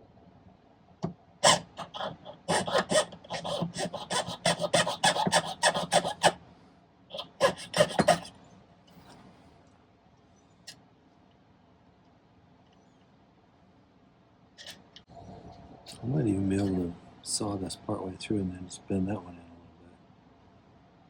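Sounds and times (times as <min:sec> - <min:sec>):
saw rasping through metal wire: 0:01.4 - 0:06.4, 0:07.1 - 0:08.3.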